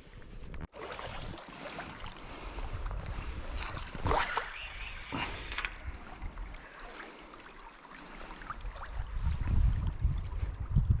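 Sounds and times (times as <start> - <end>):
sharp water splashes: 0.7 - 2.6, 3.5 - 9.6
river water flowing: 4.1 - 9.4.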